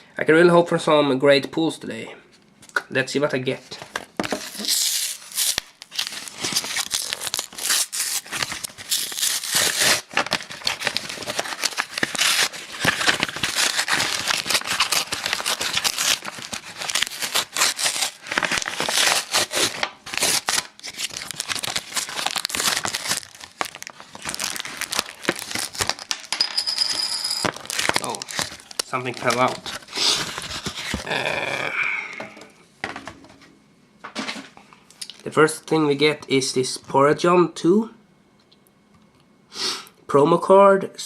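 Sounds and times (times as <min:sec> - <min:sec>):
plastic pack crinkling and ripping: 0:03.7 - 0:26.3, 0:27.4 - 0:31.5.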